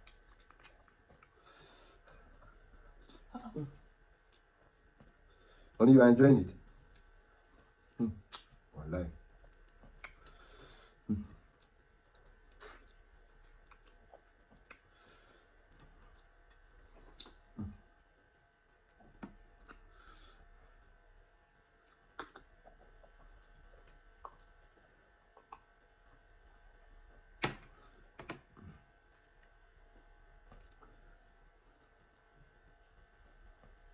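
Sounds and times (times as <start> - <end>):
mouth clicks and smacks: 0.0 - 1.4, 8.2 - 8.6, 9.5 - 10.3, 11.5 - 14.9, 15.8 - 17.8, 21.8 - 26.2.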